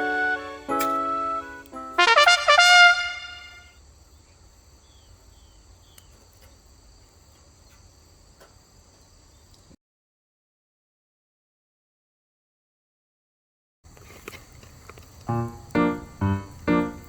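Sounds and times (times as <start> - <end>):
held brass-like notes: 0.0 - 3.7
run of bright notes: 0.0 - 3.7.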